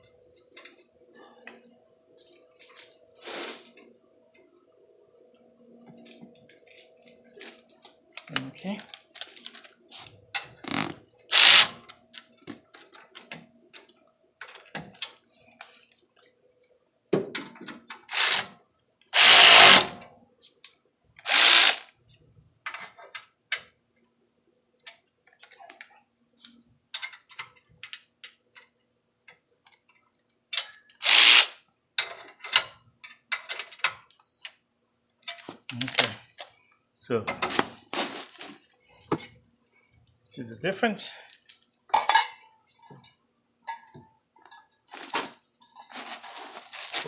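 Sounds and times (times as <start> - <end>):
power tool bursts: 11.3 - 11.8, 18.1 - 18.5, 19.2 - 20.0, 21.3 - 21.9, 31.0 - 31.6
tools and metal parts clanking: 41.9 - 47.0.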